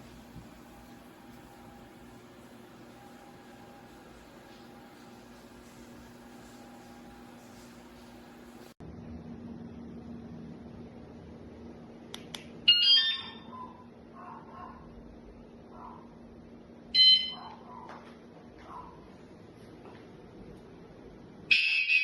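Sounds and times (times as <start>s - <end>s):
motorcycle alarm electronic beeps: 12.7s - 13.5s, 17.0s - 17.6s, 21.5s - 22.0s.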